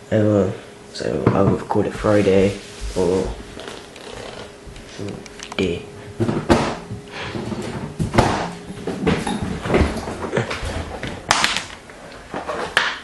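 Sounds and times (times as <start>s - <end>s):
knocks and thuds: 6.2s - 11.0s.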